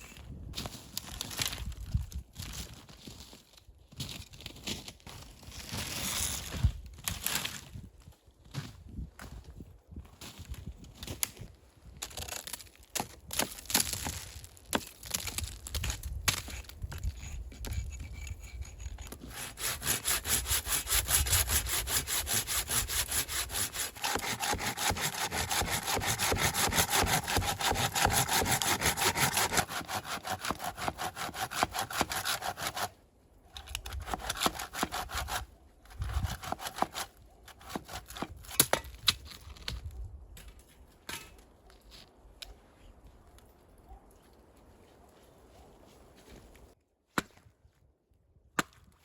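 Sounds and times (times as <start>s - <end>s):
hand saw cutting wood: 16.5s - 33.0s, 33.6s - 38.5s.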